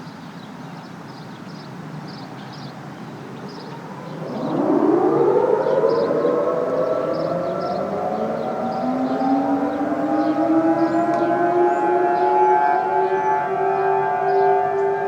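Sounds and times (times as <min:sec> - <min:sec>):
outdoor warning siren winding up: 0:03.9 - 0:15.0.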